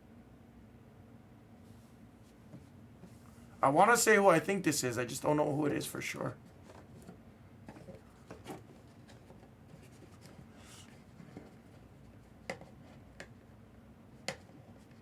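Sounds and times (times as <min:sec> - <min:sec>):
soft rubbing and rustling: 0:01.6 - 0:03.6, 0:05.6 - 0:13.4.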